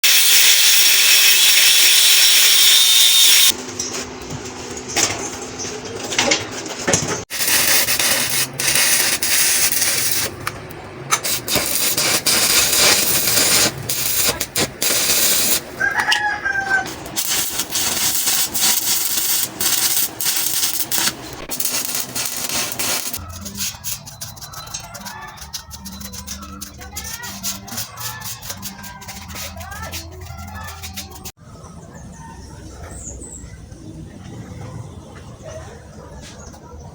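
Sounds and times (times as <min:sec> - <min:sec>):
loud steady hiss: 0:00.0 - 0:03.5, 0:16.9 - 0:23.2
welding arc crackling: 0:00.0 - 0:03.6, 0:07.3 - 0:15.9, 0:16.8 - 0:31.4
rooster crowing: 0:15.8 - 0:17.1.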